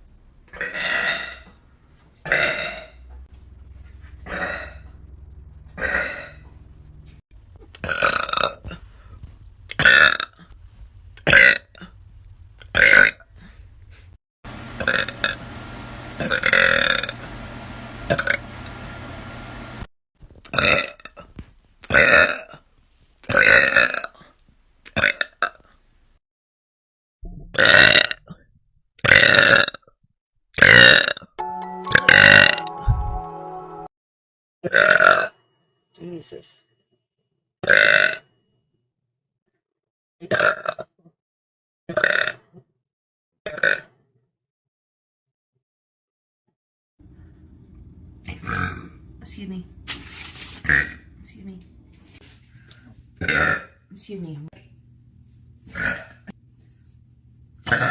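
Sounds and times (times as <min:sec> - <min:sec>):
person burping: 0:00.5 - 0:01.5, 0:02.2 - 0:03.0, 0:04.2 - 0:04.9, 0:05.8 - 0:06.4, 0:07.7 - 0:08.8, 0:09.7 - 0:10.4, 0:20.5 - 0:21.3, 0:21.9 - 0:22.7, 0:27.5 - 0:28.4, 0:29.0 - 0:29.8, 0:30.6 - 0:31.3, 0:34.6 - 0:35.4, 0:37.6 - 0:38.2, 0:40.2 - 0:41.0, 0:41.9 - 0:42.4, 0:43.5 - 0:43.9, 0:53.2 - 0:53.8.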